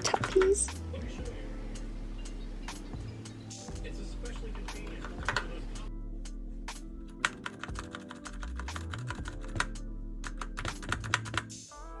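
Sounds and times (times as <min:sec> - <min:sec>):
mechanical keyboard keys clacking: 0:00.0 - 0:00.6, 0:07.1 - 0:11.5
background music: 0:00.0 - 0:12.0.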